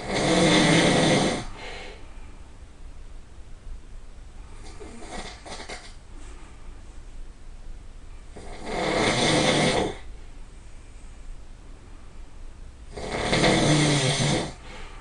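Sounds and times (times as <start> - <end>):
person snoring: 0.0 - 1.9, 4.6 - 5.9, 8.3 - 10.1, 12.9 - 14.8
faint breath: 1.4 - 2.6, 6.1 - 7.0, 14.5 - 15.0.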